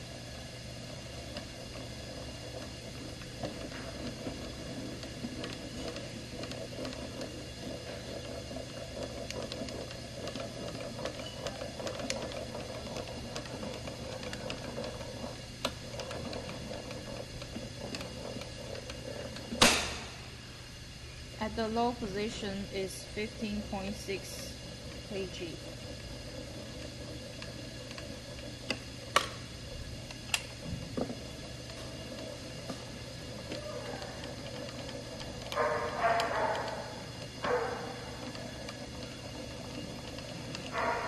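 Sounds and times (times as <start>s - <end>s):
staple gun firing snap: 19.6s - 20.1s.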